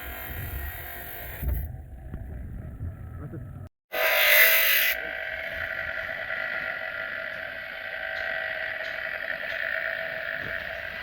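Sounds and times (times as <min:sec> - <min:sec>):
small power tool whirring: 0:03.9 - 0:11.0.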